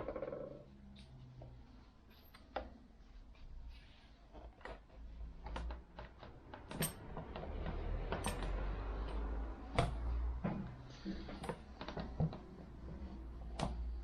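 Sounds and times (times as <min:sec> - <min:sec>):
hand tools clicking and knocking: 0:05.4 - 0:13.9.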